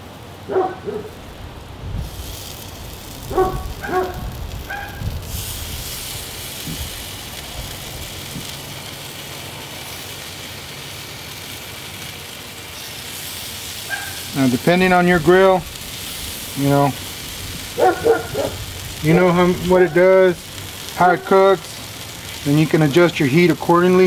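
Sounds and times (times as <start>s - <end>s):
food sizzling on grill: 0.0s - 24.0s
dog barking: 0.5s - 1.2s, 3.3s - 5.0s, 13.9s - 14.3s, 17.8s - 18.6s.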